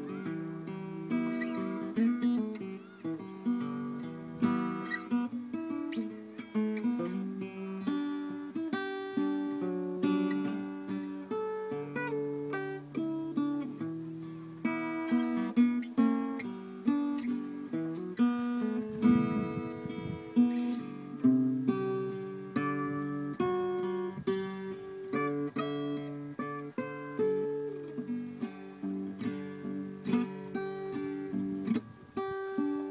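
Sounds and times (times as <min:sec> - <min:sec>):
acoustic guitar chords: 0:00.0 - 0:32.9.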